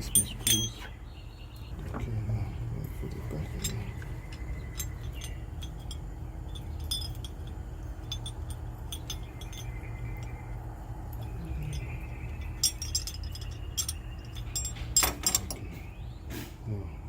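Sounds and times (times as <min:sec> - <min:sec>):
metal screws clinking: 0:00.0 - 0:00.9, 0:03.2 - 0:15.7.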